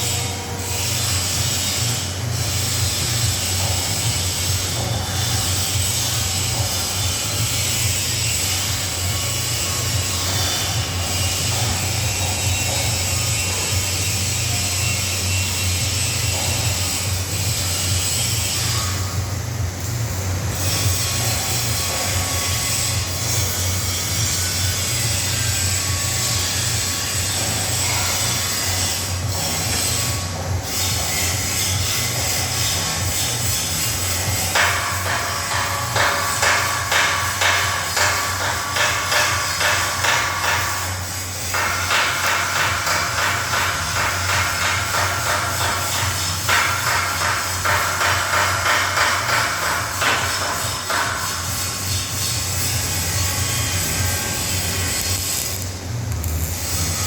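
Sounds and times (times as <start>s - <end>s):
workshop machinery humming and hissing: 0.0s - 57.0s
hammer striking metal: 34.4s - 52.3s.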